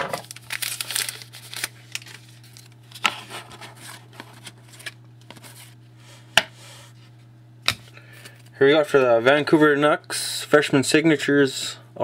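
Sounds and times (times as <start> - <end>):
trading cards being handled: 0.2 - 5.8.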